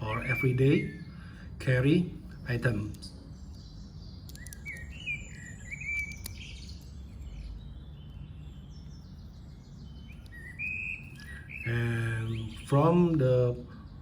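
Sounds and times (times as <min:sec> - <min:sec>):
low steady hum: 0:00.0 - 0:14.0
small birds chirping: 0:00.0 - 0:14.0
faint clicks: 0:04.2 - 0:04.9.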